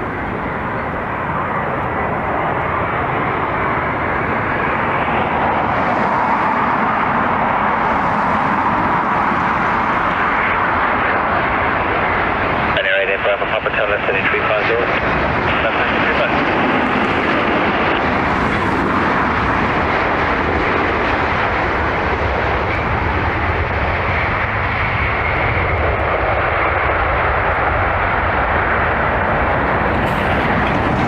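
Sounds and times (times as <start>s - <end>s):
faint engine whine: 0.0s - 31.0s
jet engines rushing: 0.0s - 31.0s.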